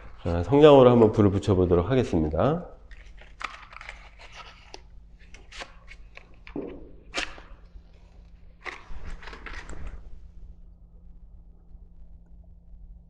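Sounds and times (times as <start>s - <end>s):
faint low hum: 0.0s - 13.0s.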